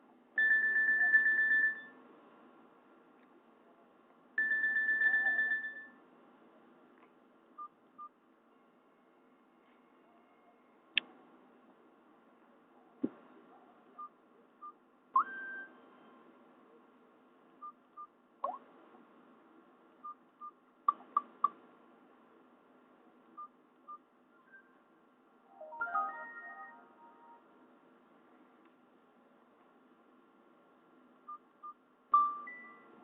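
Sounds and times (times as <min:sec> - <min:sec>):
electronic ringtone blips and chirps: 0:25.6 - 0:27.4.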